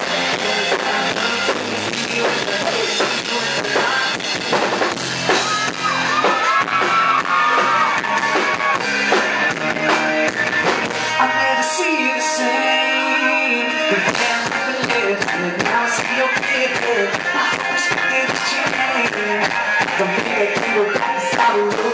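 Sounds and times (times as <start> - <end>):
person singing: 0.0 - 4.6, 10.8 - 21.9
drum kit: 0.0 - 11.5, 13.7 - 21.9
guitar: 0.0 - 21.9
rock band playing live: 0.0 - 21.9.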